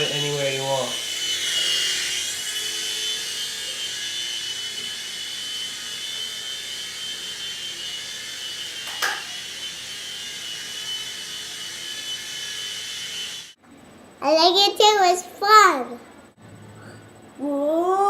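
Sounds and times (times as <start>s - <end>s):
toy helicopter rotors whining: 0.0s - 13.6s
sharp knock: 8.9s - 9.2s.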